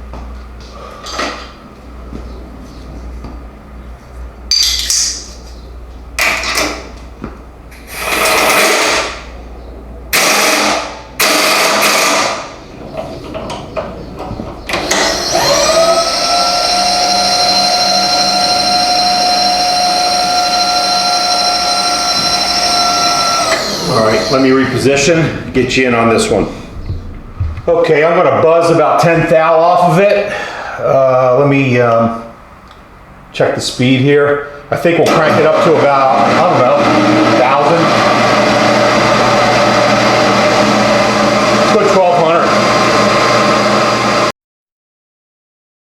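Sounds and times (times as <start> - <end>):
milling machine spindle whining: 14.2 - 27.0, 35.3 - 44.3.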